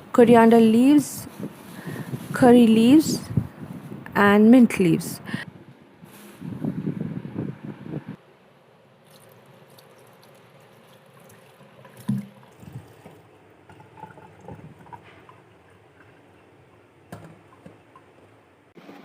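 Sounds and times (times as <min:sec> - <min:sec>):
water running and trickling: 0:09.0 - 0:18.3.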